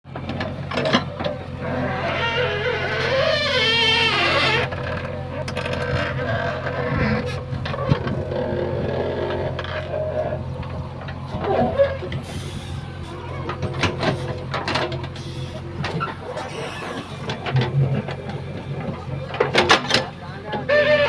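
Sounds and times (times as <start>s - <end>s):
diesel engine under load: 0.1s - 21.0s
metallic clanks and knocks: 0.2s - 1.4s, 13.4s - 16.6s, 17.2s - 20.2s.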